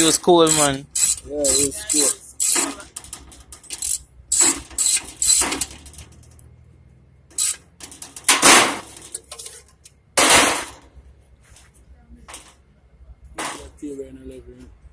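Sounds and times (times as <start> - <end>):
metal parts scraping and rattling: 0.0 - 6.6, 7.3 - 12.6.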